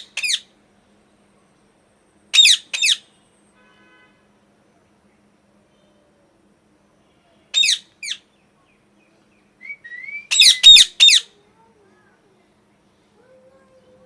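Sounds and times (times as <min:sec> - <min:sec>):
parrot screeching: 0:00.0 - 0:00.5, 0:02.4 - 0:03.0, 0:07.6 - 0:08.2, 0:09.9 - 0:11.3
parrot soft rising whistle: 0:09.6 - 0:10.8.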